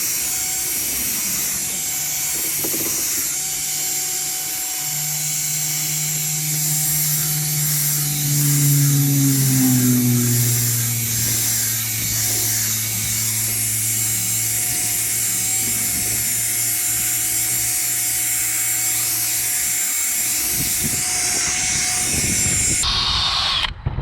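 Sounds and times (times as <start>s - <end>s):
polishing pad rubbing on plastic: 0.0s - 22.8s
electric drill whirring: 0.0s - 23.8s.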